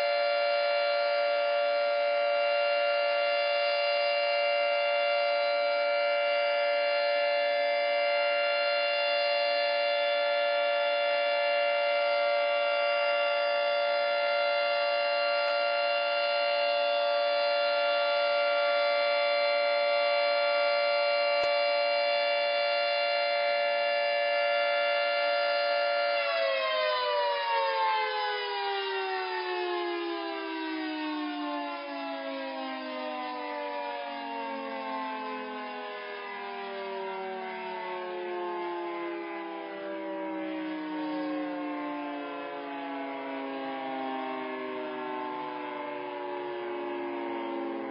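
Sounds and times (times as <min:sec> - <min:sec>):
warning siren: 0:00.0 - 0:47.9.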